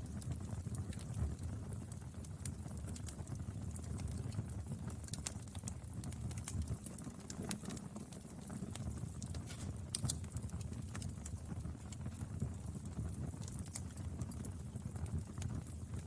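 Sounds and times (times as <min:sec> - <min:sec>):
low rumble of flames: 0:00.0 - 0:16.0
burning wood crackling: 0:03.9 - 0:16.0.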